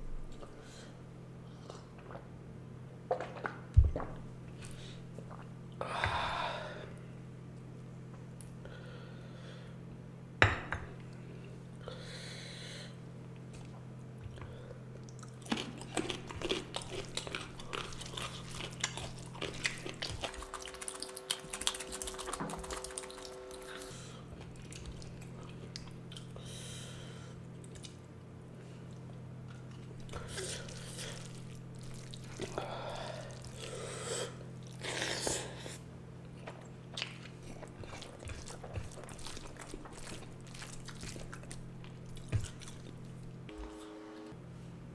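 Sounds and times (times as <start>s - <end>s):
low steady hum: 0.0s - 44.9s
person chewing food: 13.4s - 26.5s, 27.4s - 43.5s.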